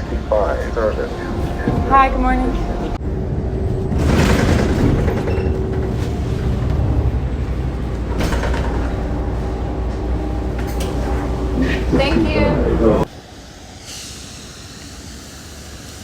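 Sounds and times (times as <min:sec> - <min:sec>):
bus engine and road rumble: 0:00.0 - 0:16.0.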